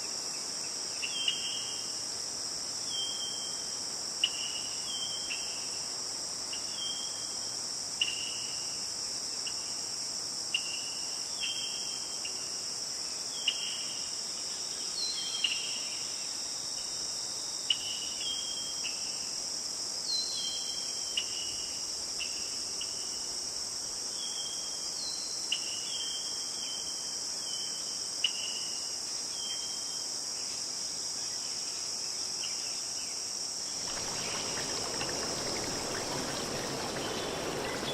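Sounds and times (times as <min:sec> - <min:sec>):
shrill insect chorus: 0:32.7 - 0:37.9
running water: 0:33.7 - 0:37.9.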